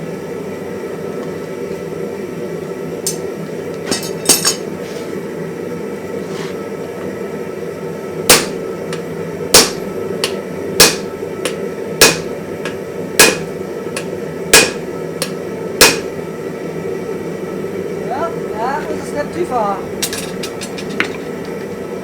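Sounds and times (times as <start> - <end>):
steady low hum: 0.0 - 22.0
hammer striking hot iron on anvil: 3.0 - 4.7, 8.3 - 16.2, 20.0 - 21.4.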